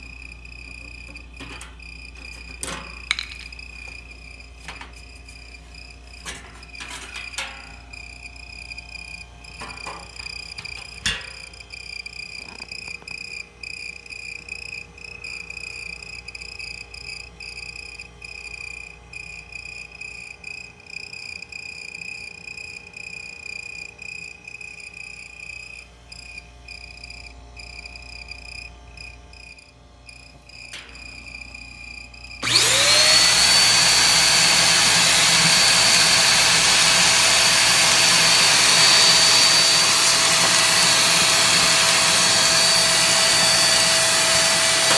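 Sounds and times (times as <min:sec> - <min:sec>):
refrigerator chirping squeak: 0:00.0 - 0:33.1
motor appliance running with whine: 0:00.0 - 0:44.9.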